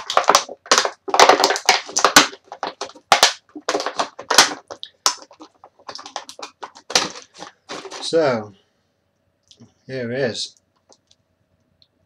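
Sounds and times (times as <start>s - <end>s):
stiff packaging crackling: 0.0s - 8.3s.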